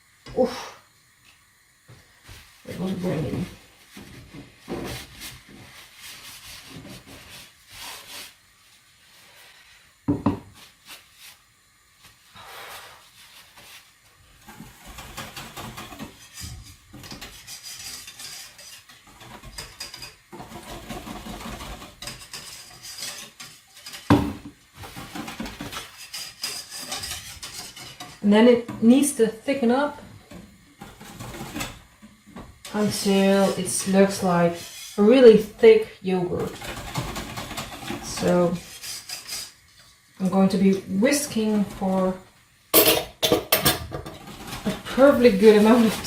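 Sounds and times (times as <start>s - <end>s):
wire whisk scraping a bowl: 14.4s - 24.2s, 24.8s - 28.3s, 30.8s - 31.9s, 32.6s - 35.6s, 36.3s - 42.2s, 43.6s - 46.0s.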